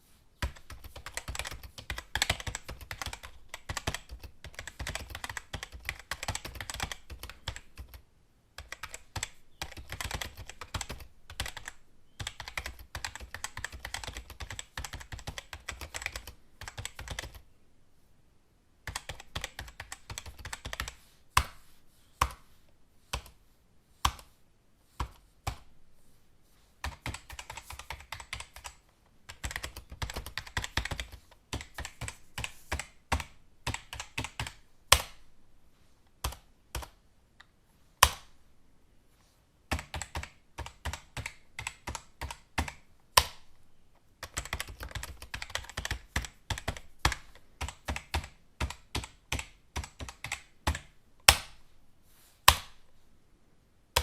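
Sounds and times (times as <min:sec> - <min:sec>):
computer keyboard typing: 0:00.4 - 0:08.0, 0:08.6 - 0:17.4, 0:18.9 - 0:21.5, 0:26.8 - 0:35.2, 0:39.7 - 0:43.5, 0:44.2 - 0:51.6.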